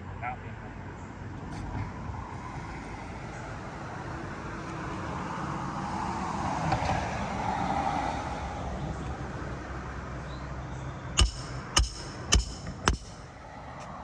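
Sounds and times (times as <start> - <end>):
vehicle passing on road: 1.2 - 10.8.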